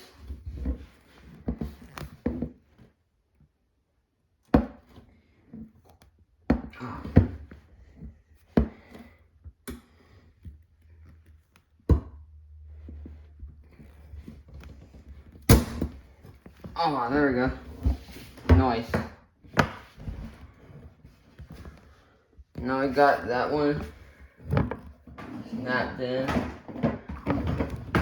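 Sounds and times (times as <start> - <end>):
hard plastic pieces knocking: 26.2 - 28.0.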